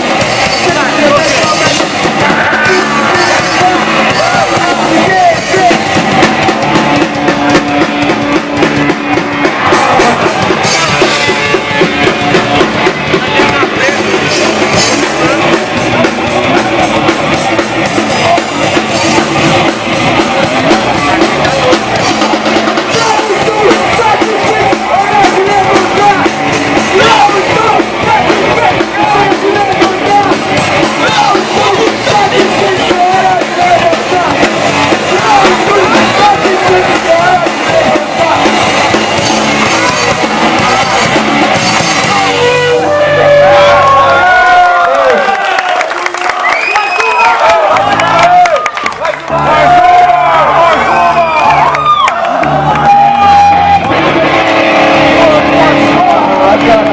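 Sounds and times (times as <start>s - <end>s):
person singing with band: 0.0s - 6.8s, 17.3s - 43.6s
guitar and bass: 0.0s - 45.6s, 47.4s - 56.9s
drum kit: 0.0s - 56.9s.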